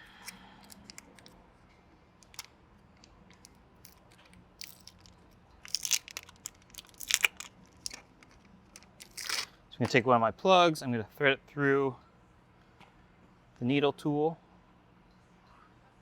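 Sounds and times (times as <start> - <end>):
crinkling crunching rustle: 0.1 - 1.4, 2.2 - 9.5.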